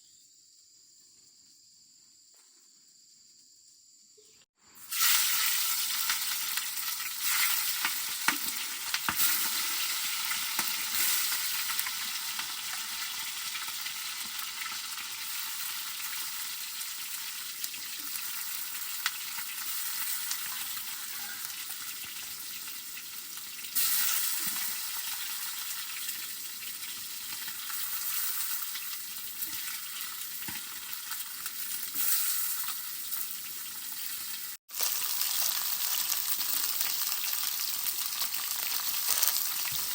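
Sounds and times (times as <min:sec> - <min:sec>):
food sizzling in a pan: 0:04.7 - 0:39.9.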